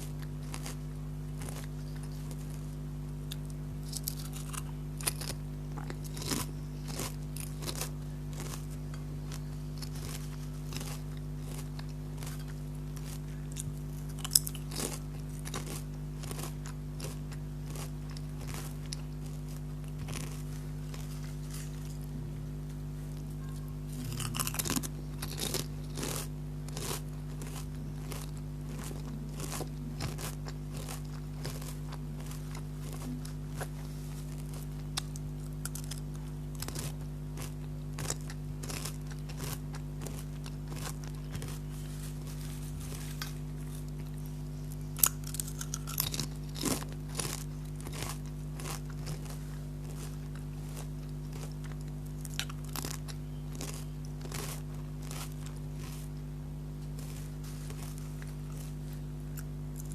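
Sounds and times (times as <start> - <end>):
crunching potato chips: 0.0 - 59.9.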